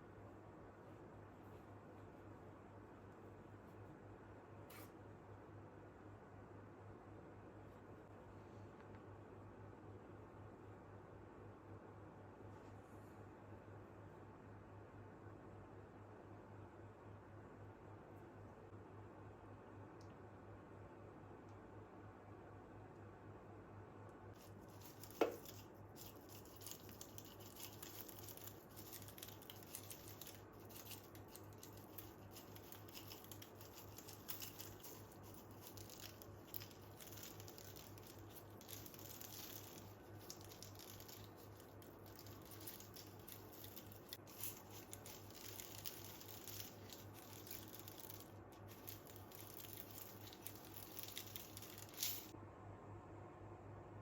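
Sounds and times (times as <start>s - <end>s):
faint steady hum: 0.0s - 54.0s
rustling handling noises: 24.4s - 52.3s.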